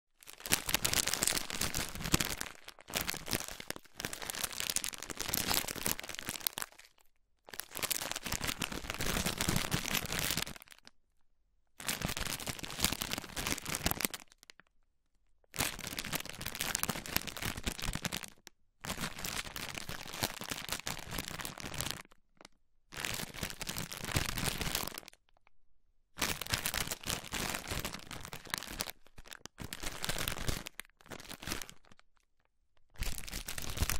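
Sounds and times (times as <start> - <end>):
plastic bag rustling and crinkling: 0.2 - 10.8, 26.2 - 31.9, 33.0 - 33.9.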